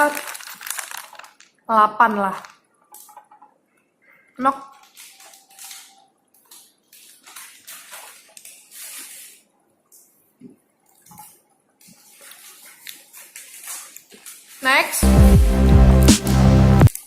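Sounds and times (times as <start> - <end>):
wet chewing noises: 10.8 - 14.6.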